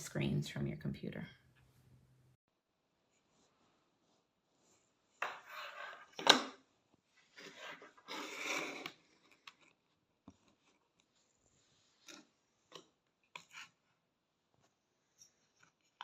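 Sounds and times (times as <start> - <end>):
things scraping on a hard surface: 4.6 - 6.4, 7.2 - 10.8, 11.4 - 13.9.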